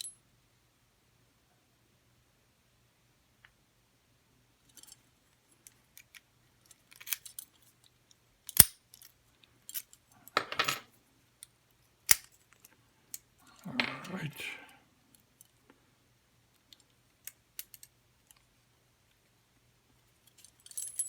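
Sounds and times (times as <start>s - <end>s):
padlock and key clicking: 8.5s - 8.8s.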